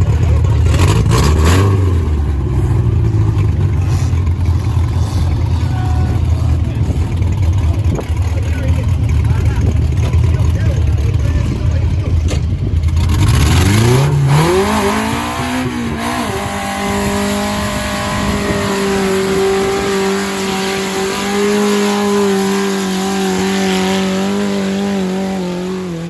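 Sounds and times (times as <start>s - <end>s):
off-road vehicle motor revving: 0.0s - 26.0s.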